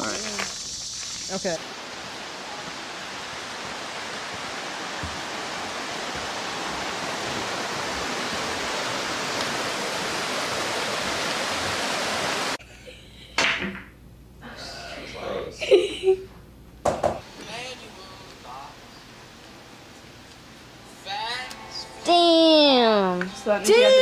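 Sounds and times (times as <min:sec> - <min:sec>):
running water rushing: 0:00.0 - 0:12.6.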